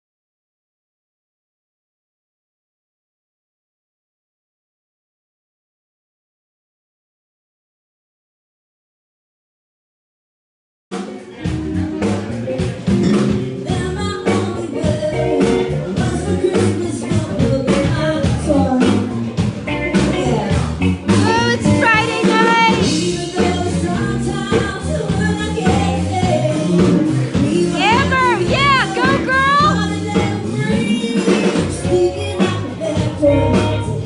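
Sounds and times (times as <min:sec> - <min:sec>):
live band playing: 0:11.0 - 0:34.0
person singing: 0:11.0 - 0:34.0.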